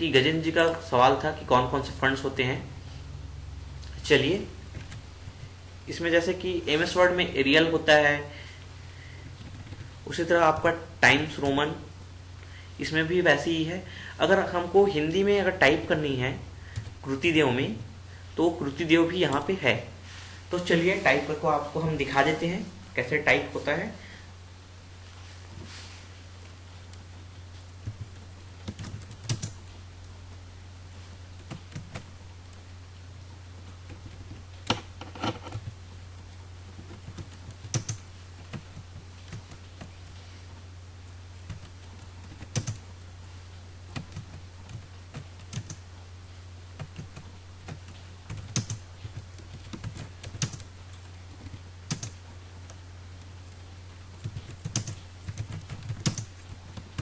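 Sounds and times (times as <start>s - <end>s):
low electrical hum: 0.0s - 57.0s
computer keyboard typing: 9.4s - 11.6s, 16.7s - 17.0s, 27.8s - 29.6s, 31.4s - 32.1s, 36.7s - 40.2s, 41.4s - 42.9s, 43.9s - 45.8s, 46.8s - 57.0s.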